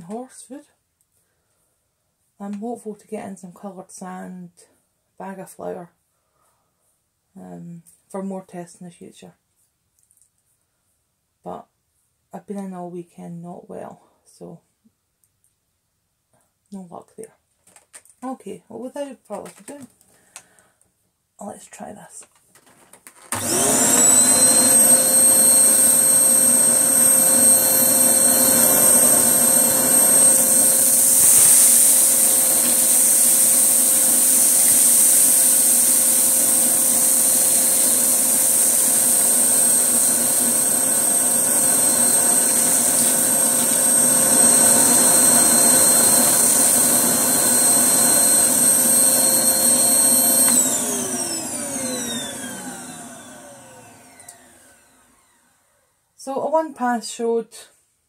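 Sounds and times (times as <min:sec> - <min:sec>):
vacuum cleaner whining: 0:23.1 - 0:55.8
vacuum motor spinning down: 0:23.3 - 0:55.7.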